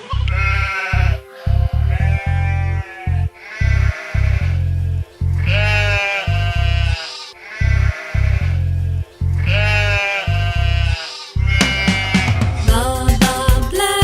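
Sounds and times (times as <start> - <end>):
sheep bleating: 0.1 - 4.6, 5.4 - 8.6, 9.4 - 12.7
instrumental children's music: 0.4 - 14.0.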